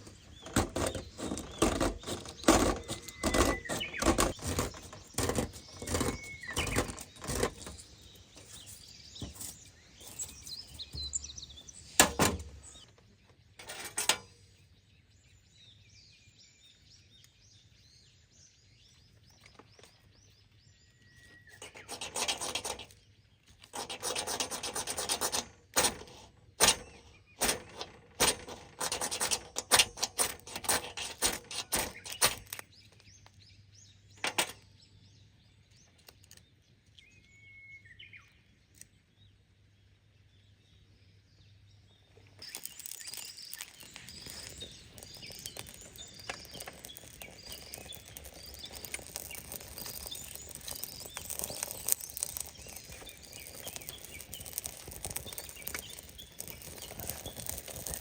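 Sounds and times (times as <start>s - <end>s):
small birds chirping: 0.0s - 58.0s.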